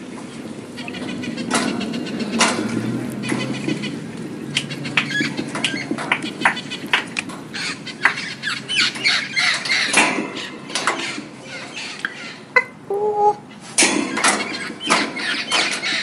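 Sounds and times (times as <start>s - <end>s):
birds squawking harshly: 0.7s - 16.0s
held bird call: 11.4s - 16.0s.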